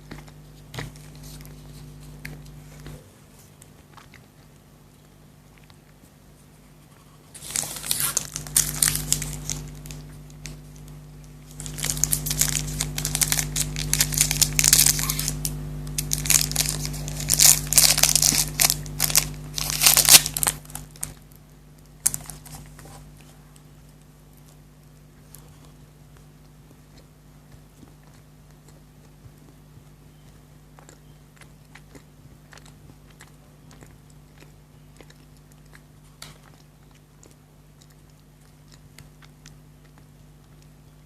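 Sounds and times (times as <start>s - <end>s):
wrapper crinkling and tearing: 7.3s - 21.3s, 22.0s - 22.7s.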